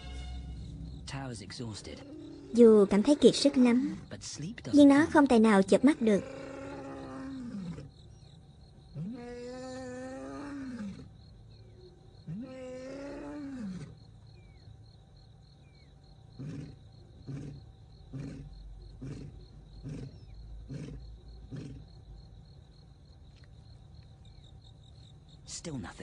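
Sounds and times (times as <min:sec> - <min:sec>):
insects trilling: 0:00.0 - 0:26.0
lion grunting: 0:04.8 - 0:07.9, 0:12.2 - 0:14.0, 0:16.4 - 0:22.0.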